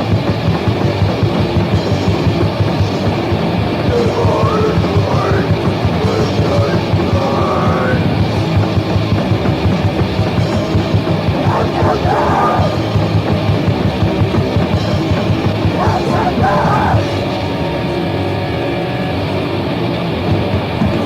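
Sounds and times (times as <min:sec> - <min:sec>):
punk band playing: 0:00.0 - 0:21.0
person singing: 0:03.9 - 0:08.2, 0:11.4 - 0:12.9, 0:15.7 - 0:17.4.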